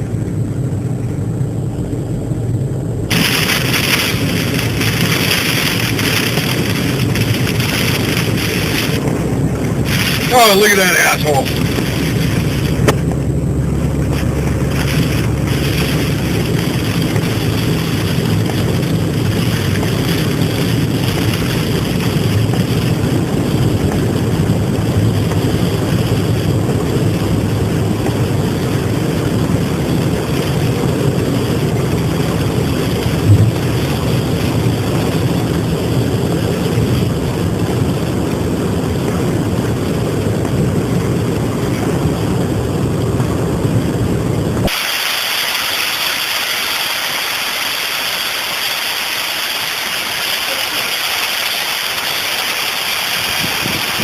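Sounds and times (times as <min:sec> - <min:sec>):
heavy hail clattering: 0:03.1 - 0:12.9.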